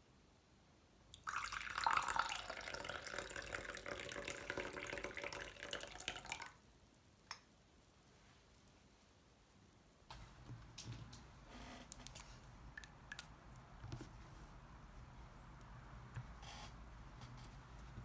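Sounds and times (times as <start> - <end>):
water running from a tap: 1.2 - 6.5.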